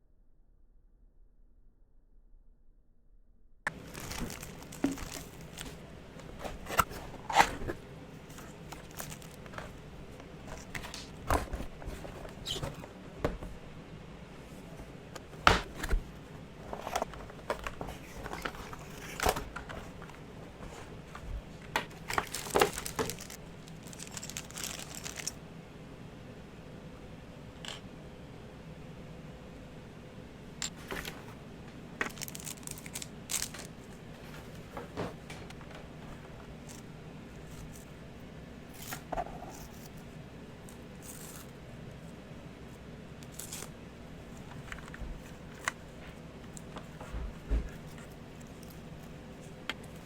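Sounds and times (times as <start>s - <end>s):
wrapping rustling and crinkling: 3.7s - 13.6s, 14.5s - 25.4s, 32.0s - 38.0s, 38.7s - 42.2s, 43.2s - 50.0s.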